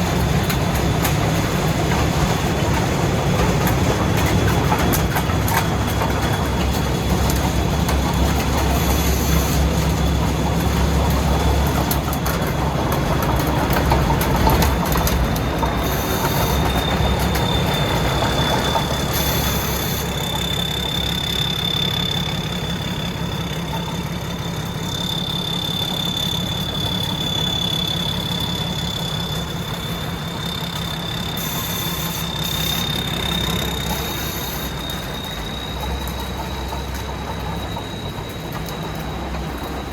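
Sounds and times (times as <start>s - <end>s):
combine harvester engine running: 0.0s - 39.9s
steady high whine: 0.0s - 39.9s.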